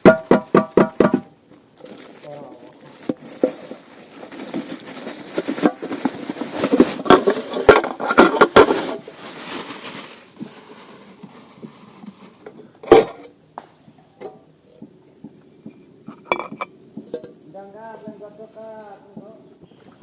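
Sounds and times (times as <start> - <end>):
camping cookware clattering: 3.1 - 9.1, 10.4 - 13.4, 15.4 - 17.4.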